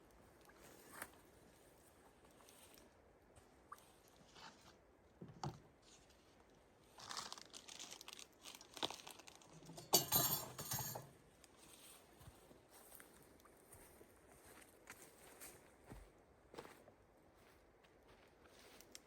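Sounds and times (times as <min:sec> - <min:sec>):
crinkling handling noises: 0:05.4 - 0:13.3.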